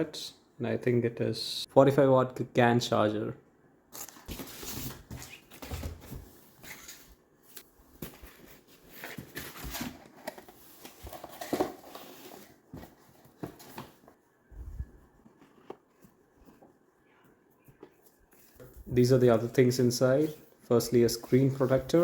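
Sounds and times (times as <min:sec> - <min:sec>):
box packaging rustling: 0:03.9 - 0:14.2.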